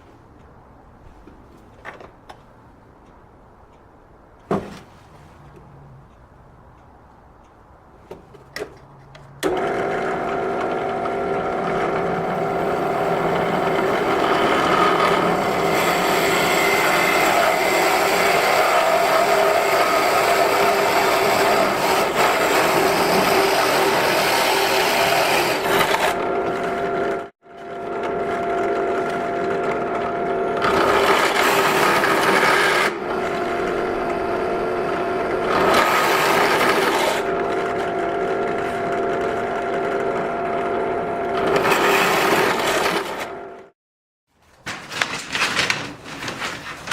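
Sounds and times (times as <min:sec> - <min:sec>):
electric power tool cutting wood: 0:09.4 - 0:43.7.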